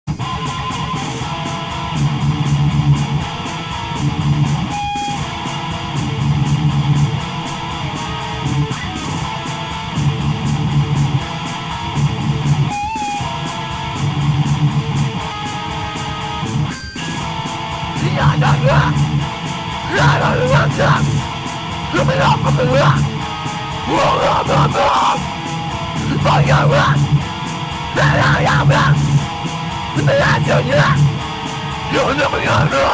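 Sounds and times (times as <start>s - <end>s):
instrumental guitar music: 0.1s - 32.9s.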